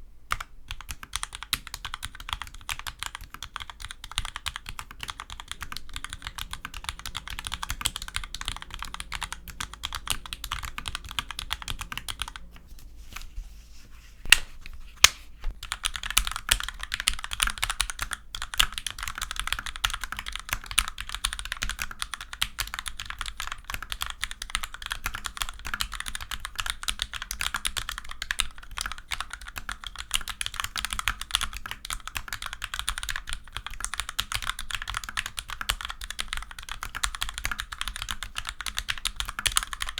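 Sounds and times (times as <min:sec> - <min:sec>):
fast typing on mechanical keyboard: 0:00.3 - 0:12.5, 0:15.6 - 0:39.9.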